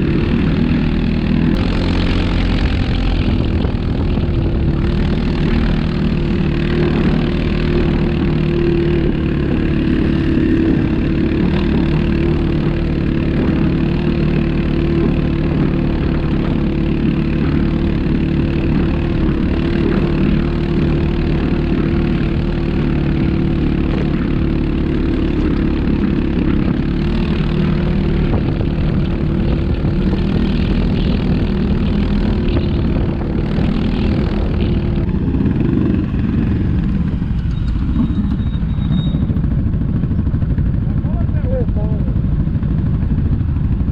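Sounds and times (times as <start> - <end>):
atv engine running: 0.0 - 43.9.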